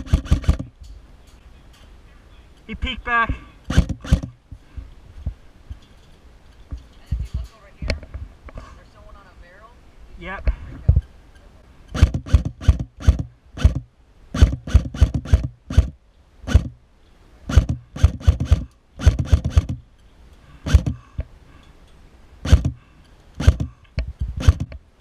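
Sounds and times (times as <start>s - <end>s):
airsoft rifle shots: 0.0s - 0.7s, 3.7s - 4.4s, 11.9s - 16.8s, 17.5s - 19.8s, 20.6s - 21.0s, 22.4s - 22.8s, 23.4s - 23.8s, 24.4s - 24.7s.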